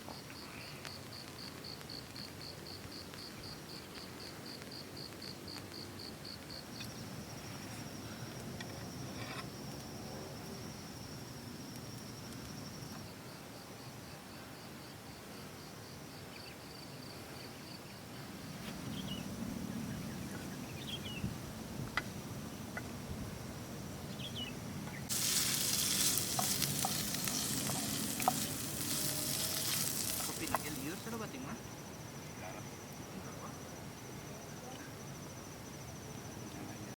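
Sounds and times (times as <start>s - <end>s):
insect chirps: 0.0s - 37.0s
insects trilling: 0.0s - 37.0s
food sizzling in a pan: 25.1s - 31.2s.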